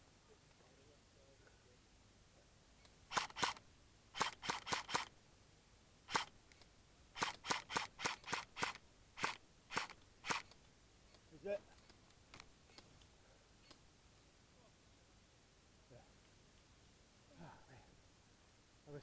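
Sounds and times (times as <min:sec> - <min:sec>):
airsoft gun shots: 0:03.1 - 0:03.6, 0:04.2 - 0:05.1, 0:07.2 - 0:10.4.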